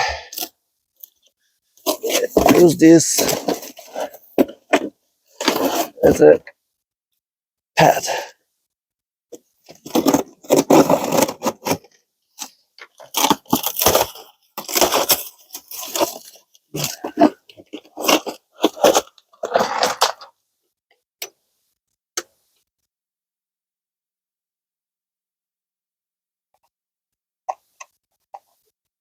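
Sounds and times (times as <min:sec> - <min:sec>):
objects clattering and rustling: 0:01.8 - 0:06.2, 0:09.7 - 0:20.3.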